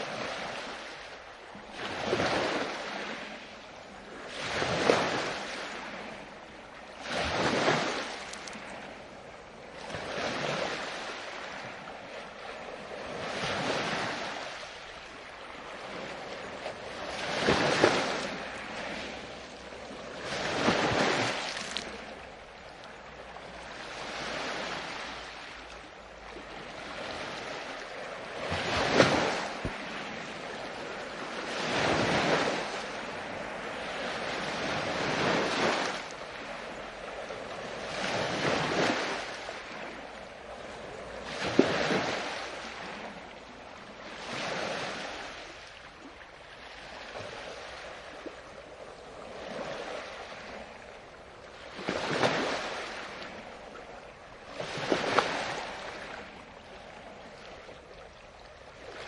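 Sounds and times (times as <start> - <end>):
wave splash: 0.0 - 59.0
waves breaking on a beach: 0.0 - 59.0.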